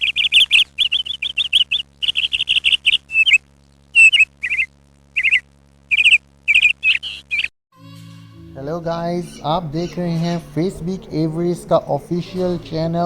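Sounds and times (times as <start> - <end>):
parrot high chirps: 0.0 - 3.4, 4.0 - 7.5.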